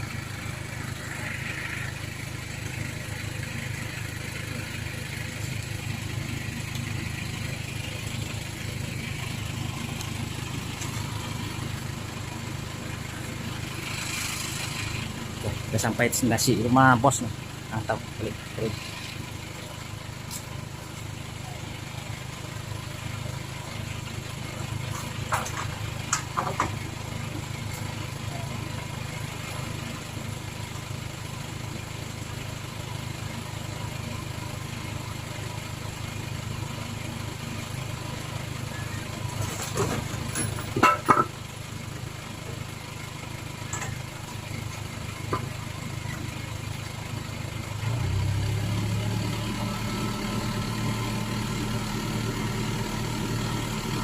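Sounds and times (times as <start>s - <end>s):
lorry engine idling: 0.0s - 54.0s
sharp metallic knocks: 40.4s - 41.4s.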